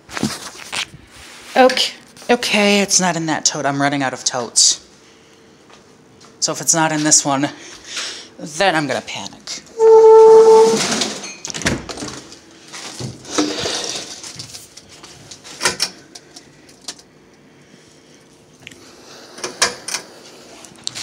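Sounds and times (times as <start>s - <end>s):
rustling of contents: 0.0s - 2.3s
plastic tote lid squeal: 9.8s - 11.0s.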